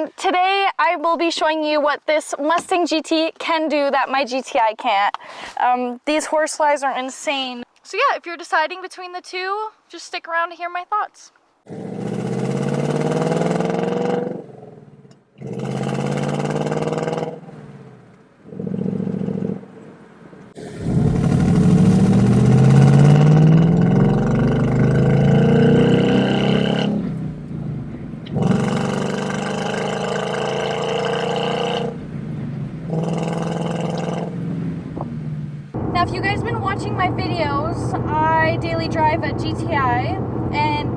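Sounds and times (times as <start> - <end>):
car exhaust accelerating: 11.7 - 40.9.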